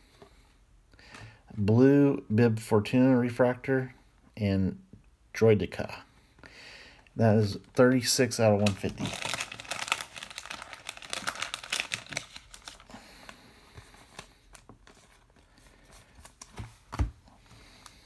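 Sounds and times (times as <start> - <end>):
card-pack wrapper crinkling: 7.6 - 15.6.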